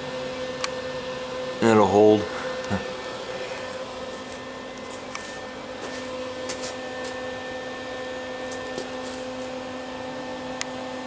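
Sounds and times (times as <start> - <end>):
small motor humming: 0.0 - 11.0.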